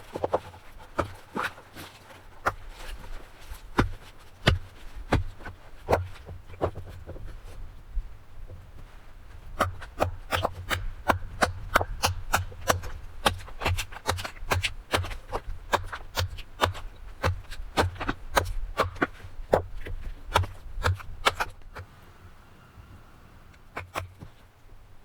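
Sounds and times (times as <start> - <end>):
cutting tool striking wood: 23.8 - 24.3.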